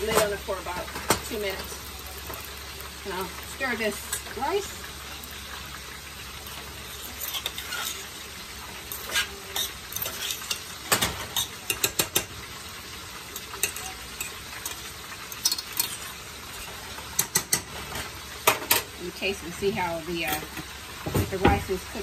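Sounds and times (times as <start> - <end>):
frying sizzle: 0.0 - 22.0
spoon scraping a pan: 6.4 - 12.5, 13.2 - 19.0.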